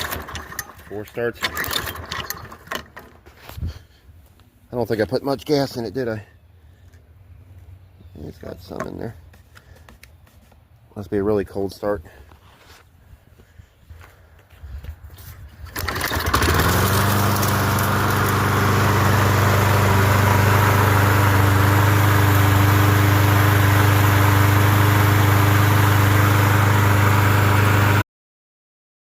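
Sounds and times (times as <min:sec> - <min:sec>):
lawn mower engine running: 0:00.0 - 0:03.6, 0:15.5 - 0:28.0.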